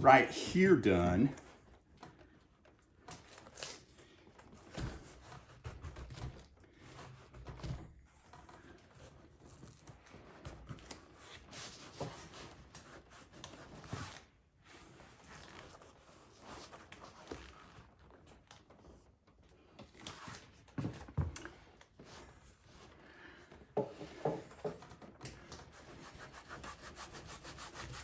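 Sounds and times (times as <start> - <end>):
soft knocks: 23.8 - 24.8.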